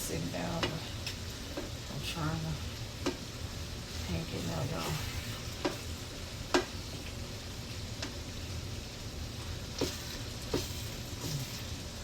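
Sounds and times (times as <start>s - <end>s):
food sizzling in a frying pan: 0.0s - 12.0s.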